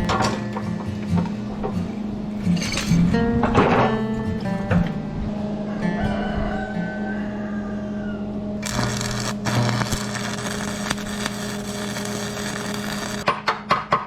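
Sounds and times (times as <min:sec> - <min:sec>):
rhythmic rasping strokes: 0:08.6 - 0:13.3
welding arc crackling: 0:08.6 - 0:13.3.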